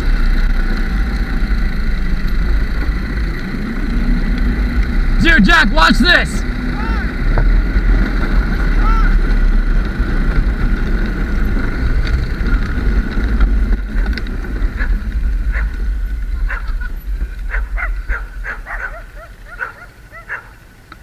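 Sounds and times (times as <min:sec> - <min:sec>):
low engine rumble: 0:00.0 - 0:21.0
dog barking and yipping: 0:14.8 - 0:15.8, 0:17.5 - 0:20.6.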